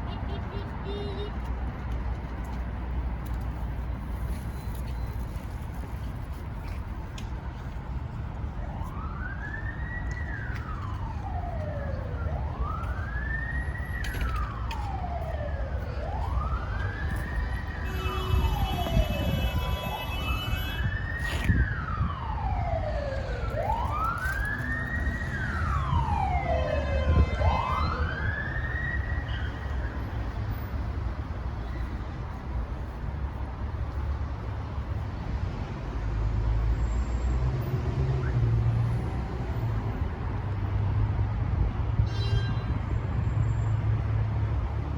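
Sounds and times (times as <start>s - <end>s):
road traffic rumble: 0.0s - 44.9s
emergency siren wailing: 8.4s - 31.3s.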